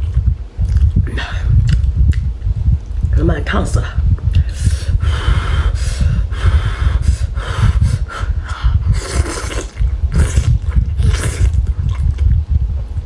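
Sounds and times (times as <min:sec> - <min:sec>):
low rumble: 0:00.0 - 0:13.0
person breathing sharply through mouth: 0:04.3 - 0:09.7.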